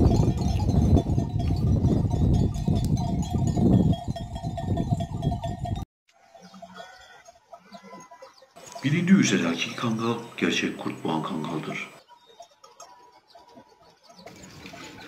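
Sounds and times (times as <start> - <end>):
sheep and goats bleating: 6.2 - 14.3.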